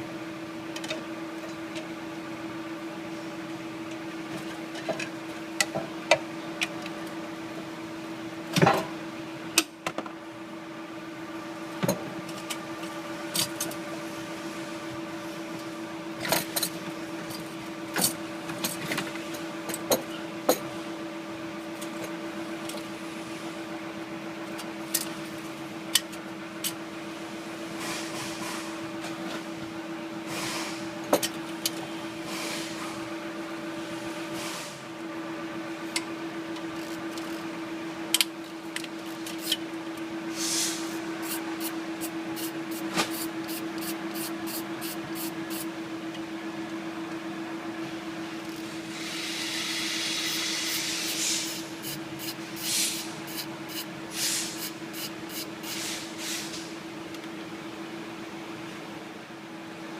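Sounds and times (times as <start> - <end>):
steady hum: 0.0 - 59.9
short hisses: 40.3 - 40.9.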